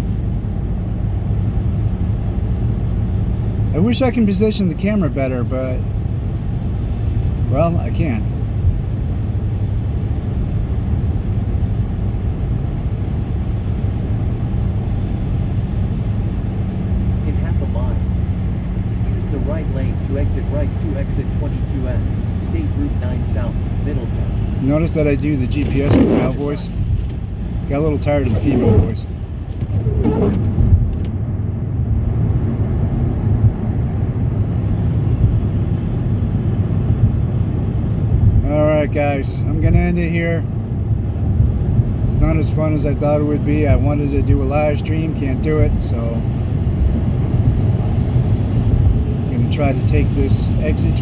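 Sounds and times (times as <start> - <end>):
car engine and tyres rumbling: 0.0 - 51.0
tyre noise on road: 22.0 - 38.5.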